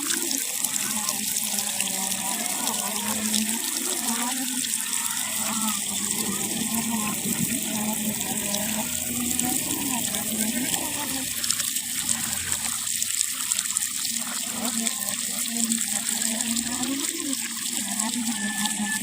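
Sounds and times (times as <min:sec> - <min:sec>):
water flowing: 0:00.0 - 0:19.0.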